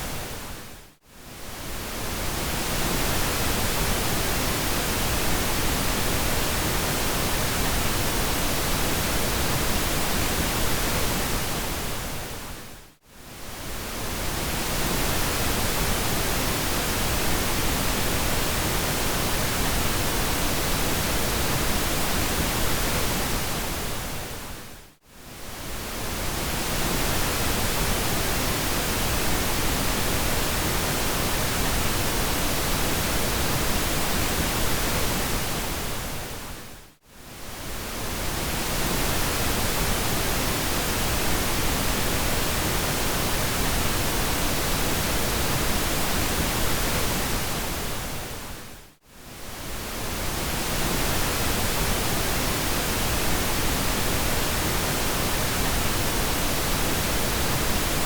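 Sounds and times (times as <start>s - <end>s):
pink noise hiss: 13.3s - 58.0s.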